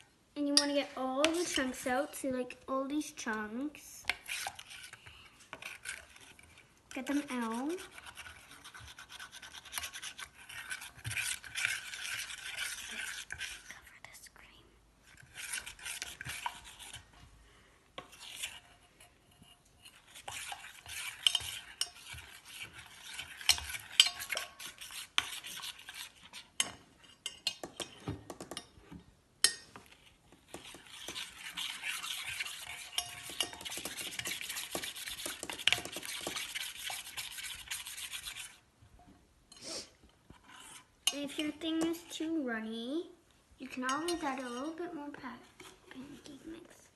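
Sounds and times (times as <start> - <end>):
spoon stirring batter: 0.0 - 14.0, 15.0 - 46.9.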